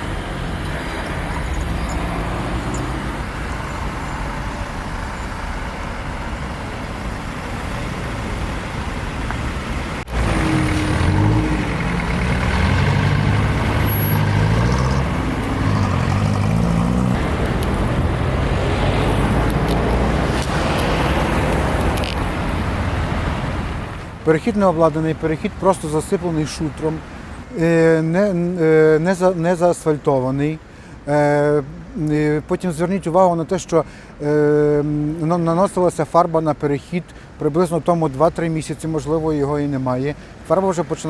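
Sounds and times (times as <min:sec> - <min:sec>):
road traffic passing: 0:00.0 - 0:41.0.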